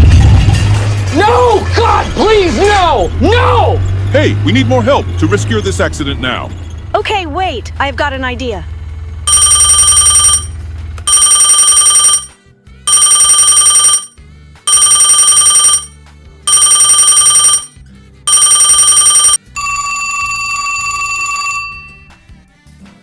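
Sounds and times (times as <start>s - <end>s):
telephone ringing: 9.3s - 22.2s.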